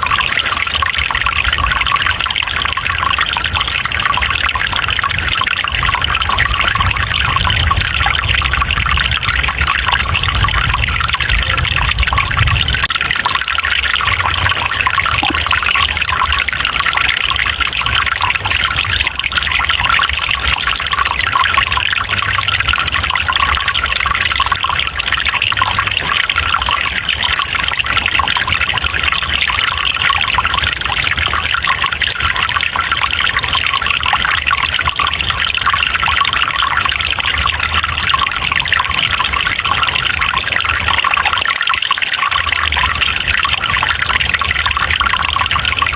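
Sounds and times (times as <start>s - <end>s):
stream water trickling: 0.0s - 45.9s.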